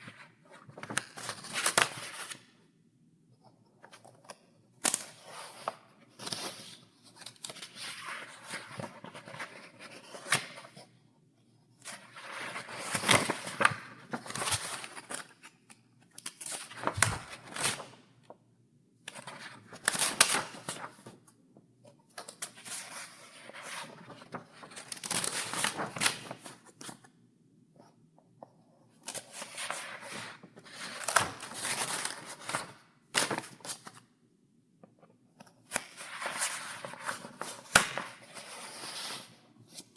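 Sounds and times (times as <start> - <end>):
paper pages turning: 16.2 - 18.0, 22.2 - 26.9.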